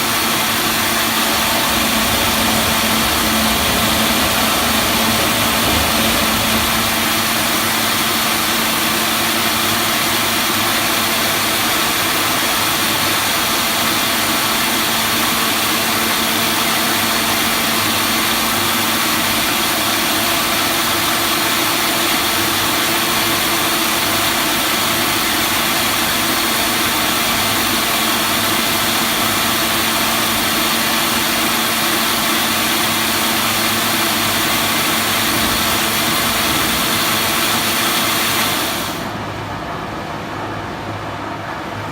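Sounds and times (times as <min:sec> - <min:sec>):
machine running with hum: 0:00.4 - 0:09.1, 0:34.0 - 0:40.5.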